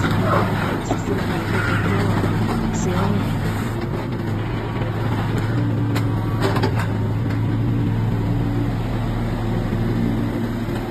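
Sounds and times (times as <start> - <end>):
diesel engine running: 0.0 - 10.9.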